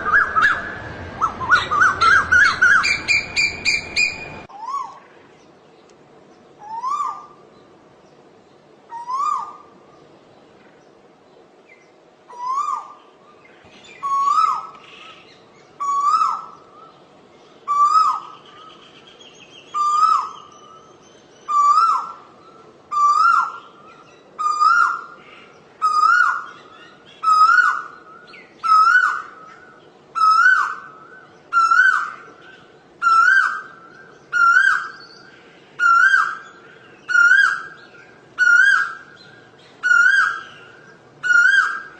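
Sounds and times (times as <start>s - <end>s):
faint background hum: 0.0s - 41.9s
koel calling: 35.8s - 41.9s.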